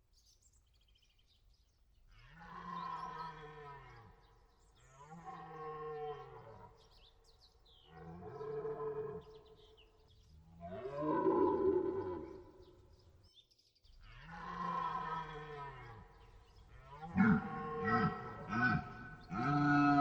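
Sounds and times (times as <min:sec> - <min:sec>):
deer stag roaring: 0:10.6 - 0:12.6, 0:16.8 - 0:20.0.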